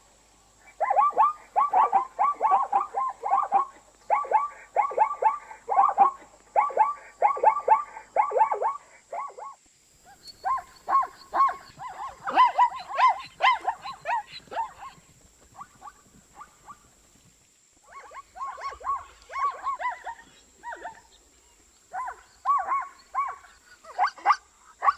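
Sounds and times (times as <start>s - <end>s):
zebra barking yelps: 0.6s - 16.8s, 17.9s - 21.2s, 21.9s - 24.9s.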